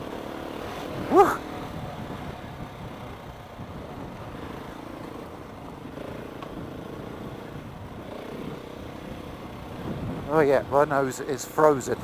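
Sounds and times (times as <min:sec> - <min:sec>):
motorcycle engine cruising: 0:00.0 - 0:12.0
wind rushing over microphone: 0:00.8 - 0:04.5, 0:09.7 - 0:11.0.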